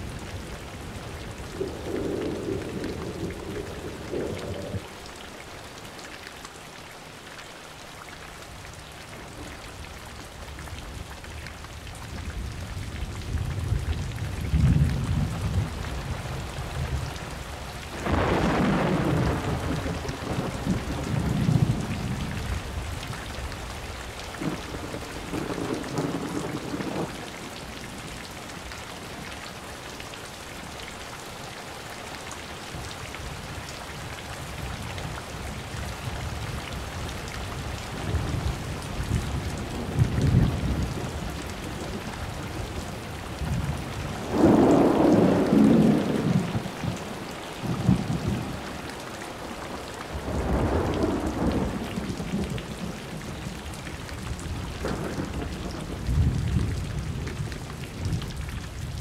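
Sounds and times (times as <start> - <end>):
steady rain falling: 0.0 - 59.0
thunder rumbling: 0.4 - 4.9, 17.9 - 23.1, 24.4 - 27.2, 38.0 - 47.0, 50.1 - 59.0.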